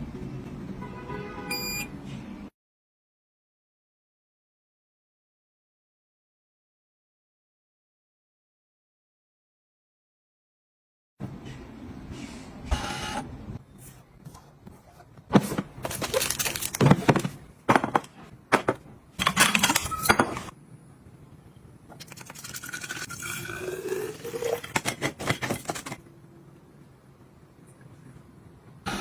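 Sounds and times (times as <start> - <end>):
dishes clinking and scraping: 18.6 - 20.5.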